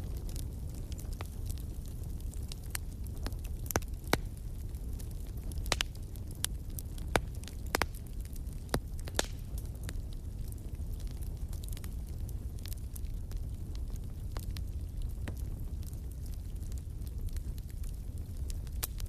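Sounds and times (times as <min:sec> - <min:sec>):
fire pops and snaps: 0:00.0 - 0:19.0
low rumble of flame: 0:00.0 - 0:19.0.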